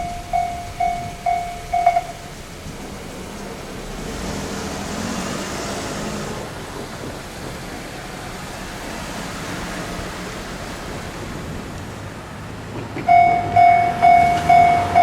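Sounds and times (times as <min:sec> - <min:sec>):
electric train passing: 0:00.0 - 0:15.0.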